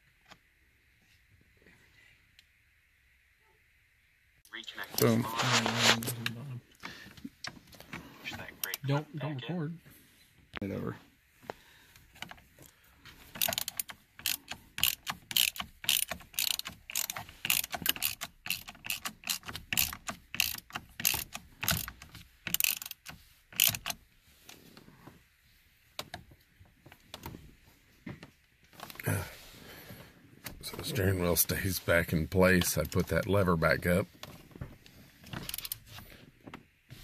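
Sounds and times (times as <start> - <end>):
hand ratchet clicking: 13.3 - 24.0, 35.4 - 35.8.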